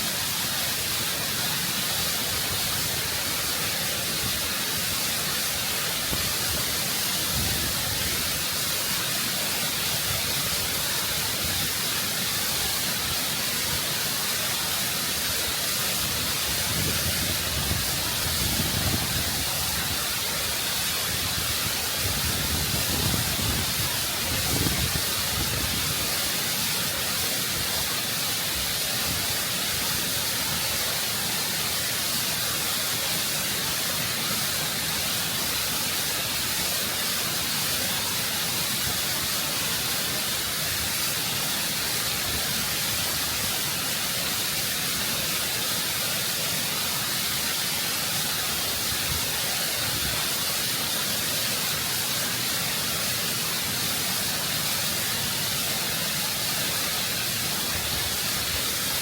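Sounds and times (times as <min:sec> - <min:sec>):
waterfall rushing over rock: 0:00.0 - 0:59.0.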